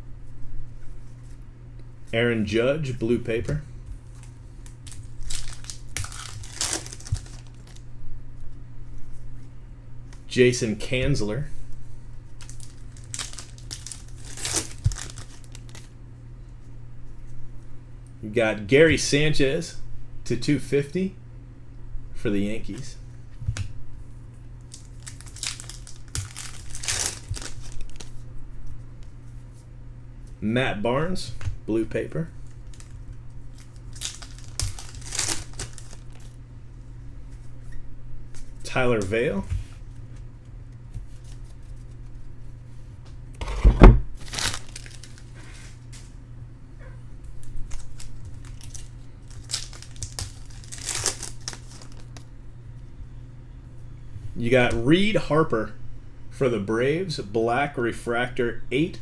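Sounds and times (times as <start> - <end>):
low electrical hum: 0.0 - 59.0
cards and wrapper rustling: 4.9 - 7.8, 12.4 - 15.9, 24.7 - 28.1, 33.6 - 36.3, 44.2 - 45.3, 47.4 - 52.2
loud thump: 43.4 - 44.1.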